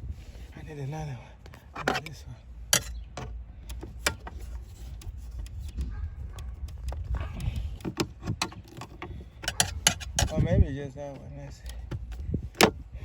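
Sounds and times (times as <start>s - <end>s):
hand tools clicking and knocking: 1.5s - 12.8s
plastic trim being pried: 2.8s - 10.5s, 11.1s - 12.9s.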